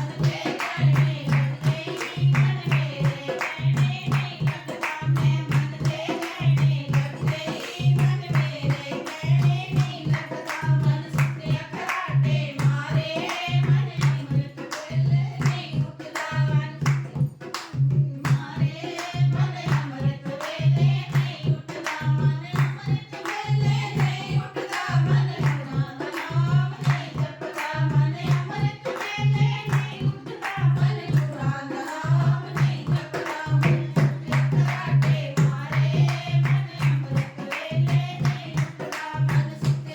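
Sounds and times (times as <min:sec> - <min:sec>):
hand clapping: 0:00.0 - 0:15.6, 0:16.2 - 0:18.4, 0:21.1 - 0:39.9
group singing devotional song: 0:00.0 - 0:39.9.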